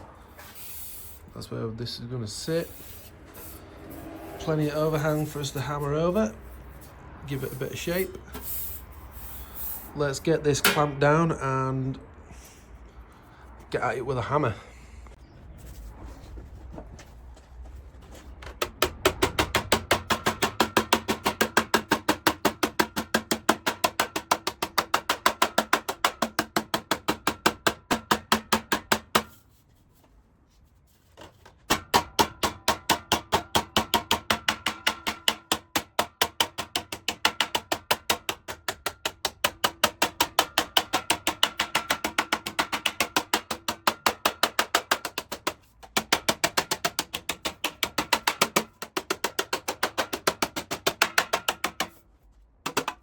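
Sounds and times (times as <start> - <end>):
hammer striking sheet metal: 10.6 - 11.2, 18.6 - 29.4, 31.7 - 52.0.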